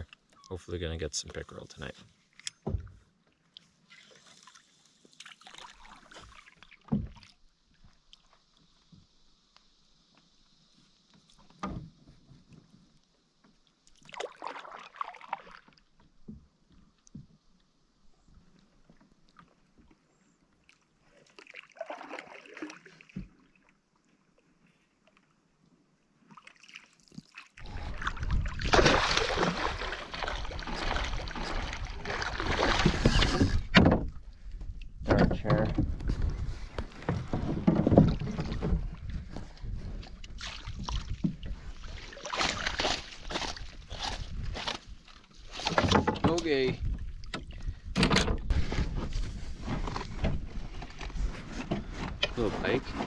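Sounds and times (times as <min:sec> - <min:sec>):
paddle strokes in water: 0:10.0 - 0:25.1, 0:26.2 - 0:34.7, 0:35.8 - 0:47.7
short swishing splashes: 0:26.4 - 0:33.4.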